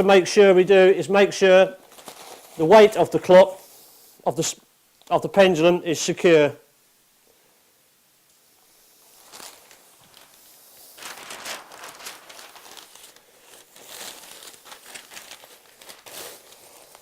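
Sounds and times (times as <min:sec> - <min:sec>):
packing paper crinkling: 0:01.8 - 0:03.0, 0:09.0 - 0:17.0.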